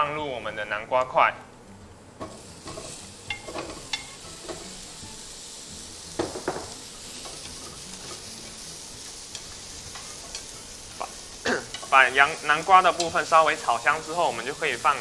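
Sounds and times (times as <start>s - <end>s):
vegetables sizzling in a pan: 1.7s - 15.0s.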